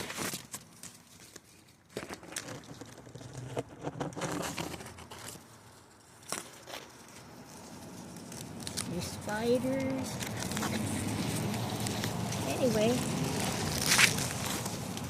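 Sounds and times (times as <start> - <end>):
hedge leaves rustling on camera: 4.2 - 15.0
twigs snapping: 6.2 - 15.0.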